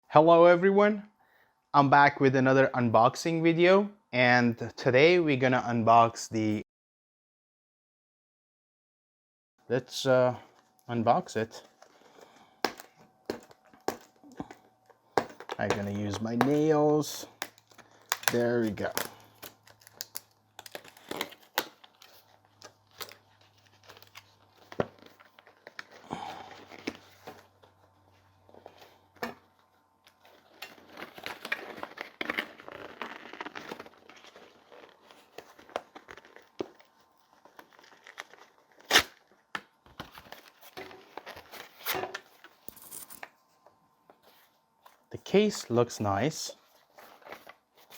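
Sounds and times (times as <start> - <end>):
packaging tearing and crinkling: 15.2 - 27.9, 28.5 - 42.0.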